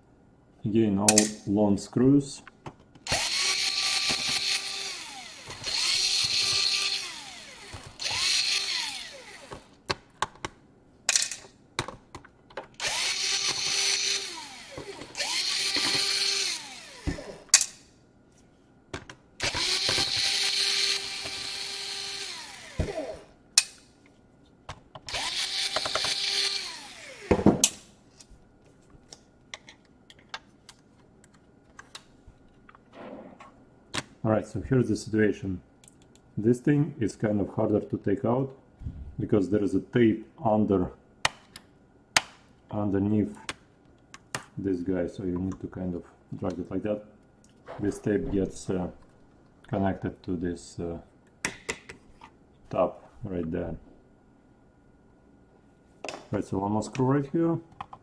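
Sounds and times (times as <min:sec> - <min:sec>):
electric screwdriver whirring: 0:03.1 - 0:09.7, 0:12.8 - 0:17.5, 0:19.4 - 0:23.3, 0:25.1 - 0:27.3.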